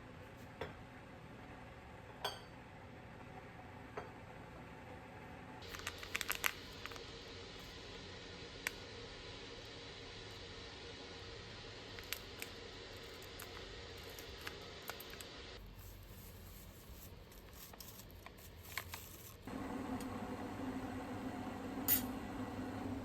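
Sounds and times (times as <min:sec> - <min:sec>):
steady low hum: 0:19.5 - 0:23.0.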